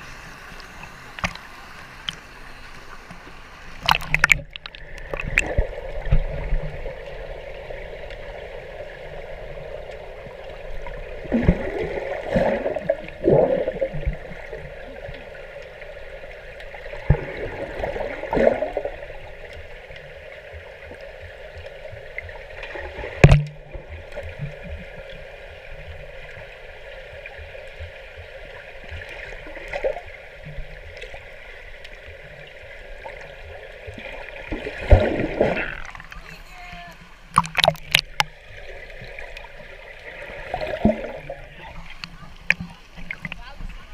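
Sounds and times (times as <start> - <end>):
water splashing: 0.0 - 43.9.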